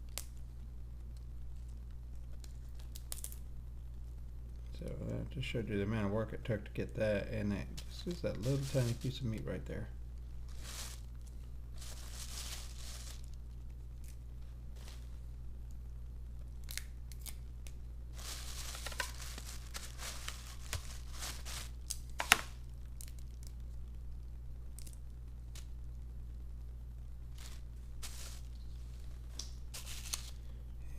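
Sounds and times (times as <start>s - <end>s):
steady low hum: 0.0s - 30.9s
crab shell cracking: 2.2s - 3.4s, 16.5s - 17.8s.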